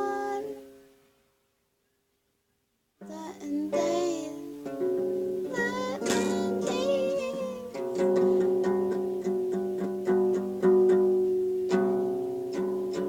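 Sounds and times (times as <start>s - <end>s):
guitar strumming: 3.7s - 13.0s.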